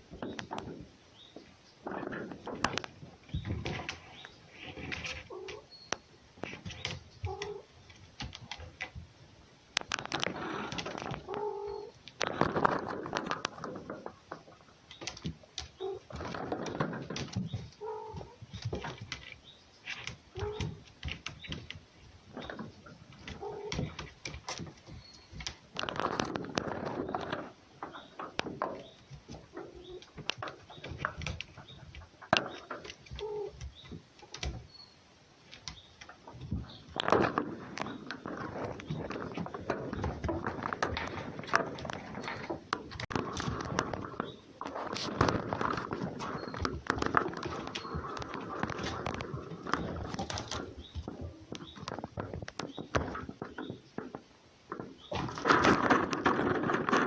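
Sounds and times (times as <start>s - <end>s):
rustling: 0.0s - 57.0s
low cooing calls: 1.8s - 6.0s, 6.6s - 7.8s, 10.1s - 21.7s, 22.3s - 34.8s
scattered clicks and taps: 2.0s - 9.0s, 9.8s - 34.6s, 35.5s - 57.0s.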